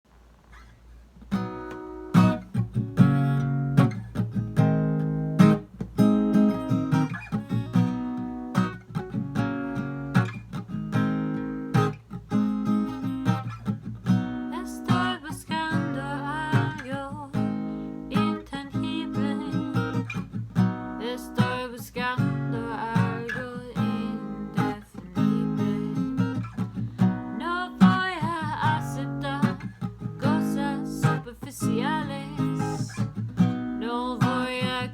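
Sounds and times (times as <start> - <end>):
acoustic guitar strumming: 1.3 - 34.9
person singing: 14.6 - 20.0, 27.4 - 32.9, 33.8 - 34.9.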